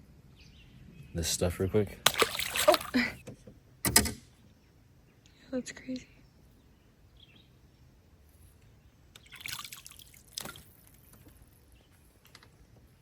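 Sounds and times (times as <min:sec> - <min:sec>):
water splashing and dripping: 0:02.0 - 0:03.2, 0:09.2 - 0:11.1.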